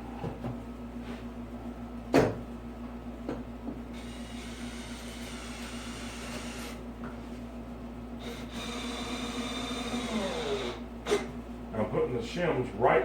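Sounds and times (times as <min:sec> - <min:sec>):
cordless drill driving screw: 0:08.2 - 0:10.8.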